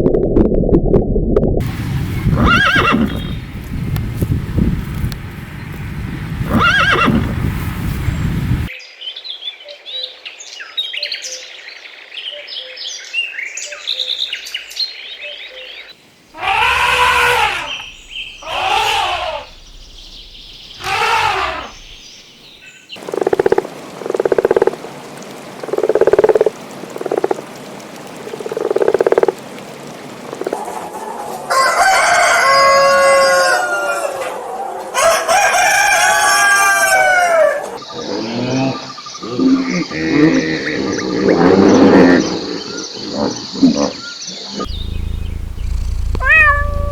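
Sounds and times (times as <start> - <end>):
rooster crowing: 16.4 - 20.1, 30.9 - 37.8, 44.7 - 46.9
chickens chirping: 16.4 - 22.0.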